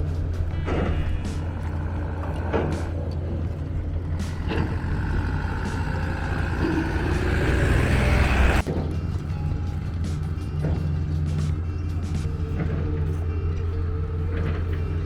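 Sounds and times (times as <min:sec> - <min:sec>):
passing tyre and engine noise: 0:00.0 - 0:11.6
heavy vehicle engine rumble: 0:00.0 - 0:15.0.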